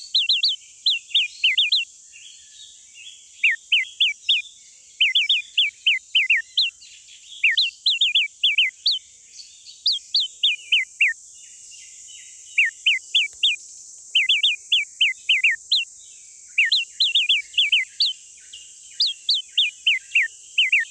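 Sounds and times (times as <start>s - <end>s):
small bird chirping: 0.0s - 20.9s
steady high hiss: 8.4s - 20.9s.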